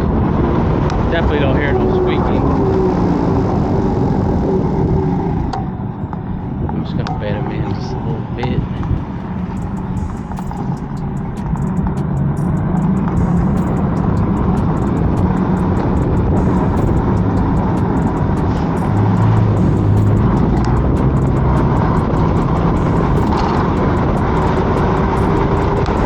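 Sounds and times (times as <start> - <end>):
low hum: 0.0 - 26.0
tyre noise: 0.0 - 26.0
wind rushing on microphone: 0.0 - 26.0.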